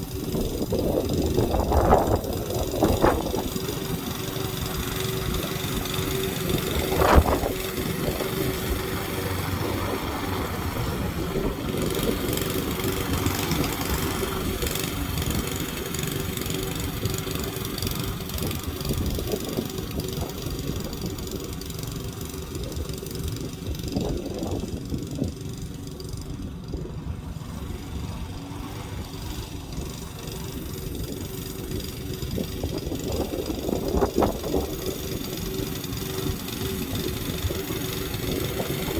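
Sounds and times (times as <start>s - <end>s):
lawnmower engine running: 0.0s - 38.9s.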